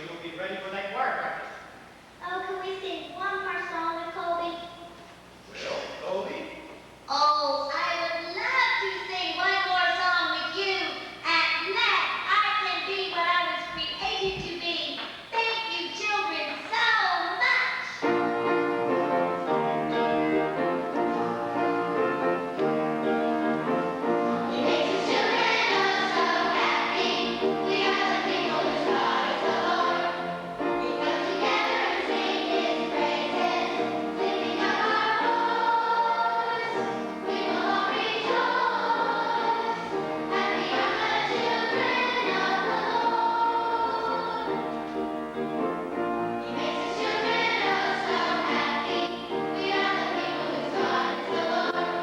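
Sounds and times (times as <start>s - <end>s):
church choir singing: 18.0s - 52.0s.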